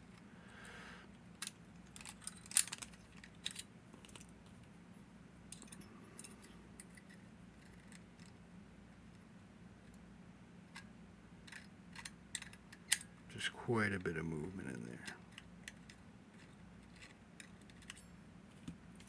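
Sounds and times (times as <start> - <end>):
padlock parts clicking: 1.3 - 4.3, 5.5 - 8.4, 10.7 - 13.2, 15.2 - 19.0.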